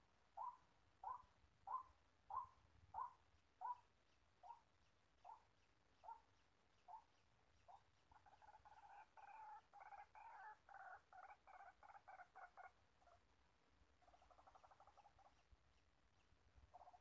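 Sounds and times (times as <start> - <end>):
waterhen calling: 8.2 - 13.2.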